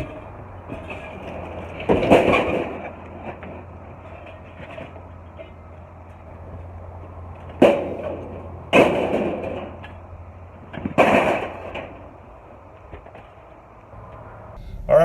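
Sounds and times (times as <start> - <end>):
scrap metal crashing onto pile: 0.0 - 6.3, 7.4 - 12.3
steady low hum: 13.8 - 15.0.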